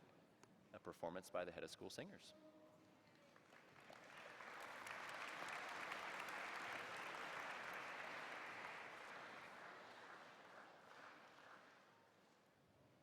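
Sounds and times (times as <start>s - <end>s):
audience applauding: 3.6s - 11.8s.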